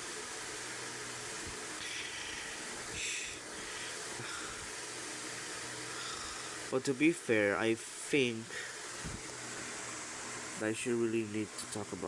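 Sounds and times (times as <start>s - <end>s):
soft hissing puffs: 1.4s - 6.8s, 8.0s - 11.8s.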